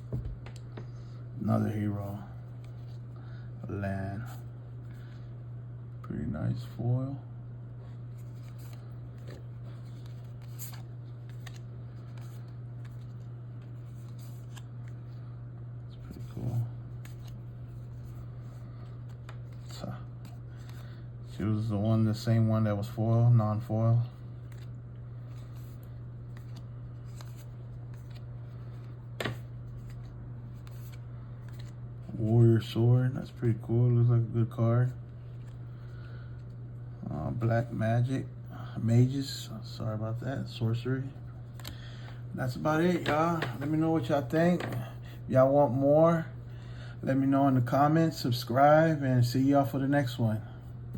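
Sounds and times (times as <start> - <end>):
steady low hum: 0.0 - 50.9
cards rustling and flicking: 8.1 - 15.2, 16.0 - 21.0, 24.2 - 32.7.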